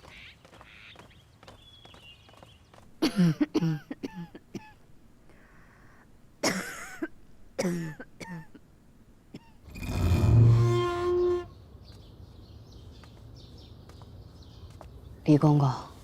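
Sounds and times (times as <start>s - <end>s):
woman coughing: 3.0s - 4.8s, 6.4s - 8.6s.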